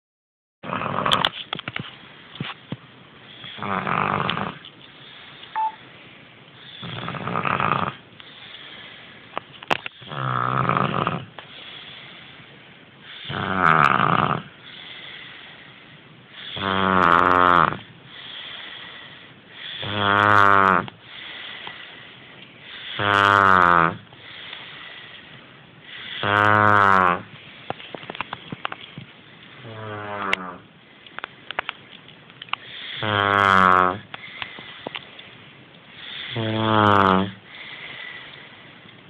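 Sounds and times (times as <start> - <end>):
man snoring: 3.6 - 4.6, 6.7 - 8.0, 10.0 - 11.3, 13.1 - 14.6, 16.4 - 18.5, 19.6 - 21.3, 22.7 - 24.1, 25.9 - 27.3, 32.8 - 34.1, 36.0 - 38.2
soft breathing: 8.2 - 10.1, 11.4 - 13.3, 14.5 - 16.6, 17.8 - 19.9, 21.0 - 23.0, 24.0 - 26.2, 34.0 - 36.6, 37.3 - 39.0.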